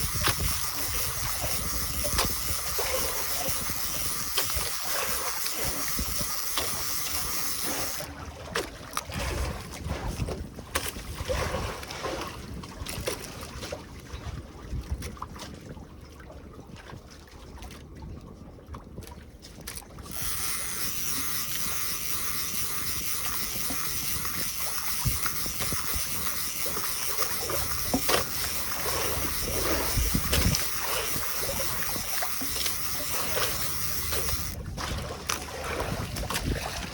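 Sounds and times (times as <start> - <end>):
wind noise: 0.0 - 8.1, 19.7 - 36.9
water sloshing around boat: 0.0 - 36.9.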